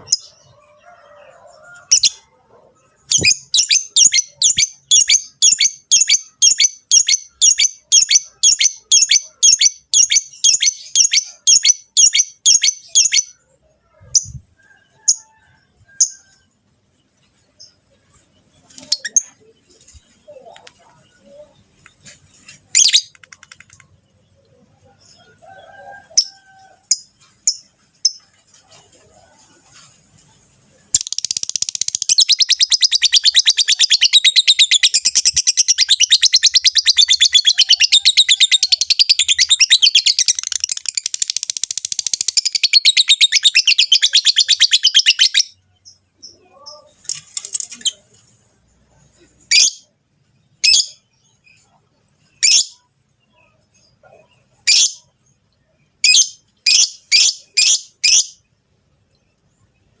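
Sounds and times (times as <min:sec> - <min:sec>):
lovebirds chattering: 0:01.9 - 0:13.4, 0:17.5 - 0:26.3, 0:30.3 - 0:49.9.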